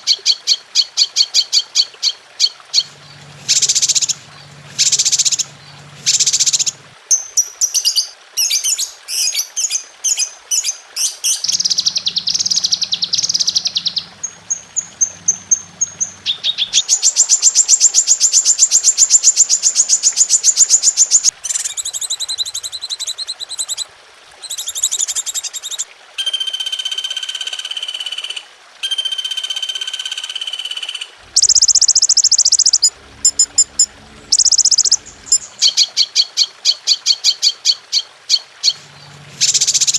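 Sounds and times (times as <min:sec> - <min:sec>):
songbird chirps: 0:00.0 - 0:28.1, 0:28.8 - 0:39.9
buzzy bird trill: 0:03.0 - 0:04.2, 0:04.8 - 0:17.9, 0:31.2 - 0:36.0
whistled bird notes: 0:28.8 - 0:36.0.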